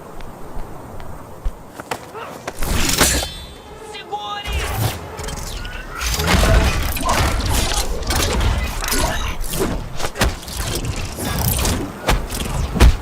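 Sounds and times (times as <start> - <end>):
mechanical clanking: 2.6 - 3.7, 4.4 - 12.8
sharp impacts: 2.6 - 13.0
whooshes: 4.5 - 13.0.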